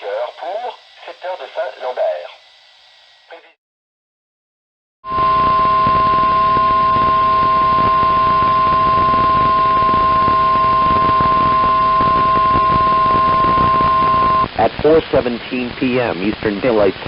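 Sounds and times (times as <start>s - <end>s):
long steady alarm beep: 0.0s - 3.4s, 5.1s - 14.5s
radio static hiss: 0.0s - 3.6s, 5.2s - 17.0s.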